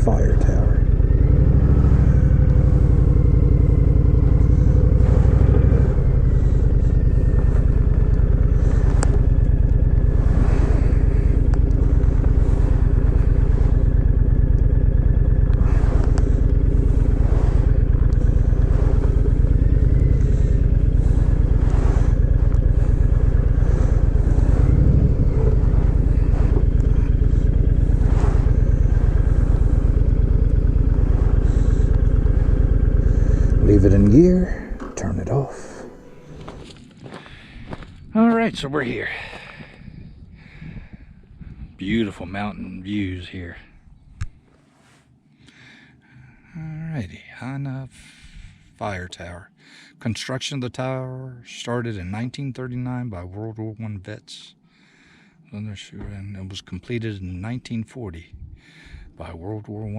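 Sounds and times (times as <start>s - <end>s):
motorcycle engine running: 0.0s - 38.7s.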